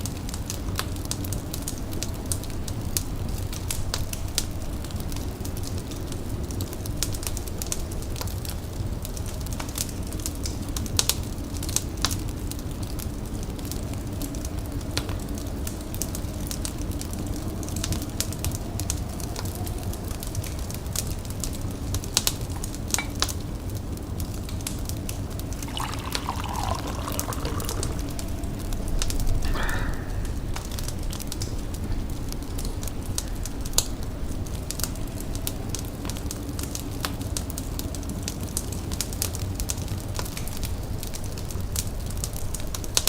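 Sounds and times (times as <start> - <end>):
water pouring: 25.6 - 29.3
wood fire crackling and popping: 30.1 - 43.0.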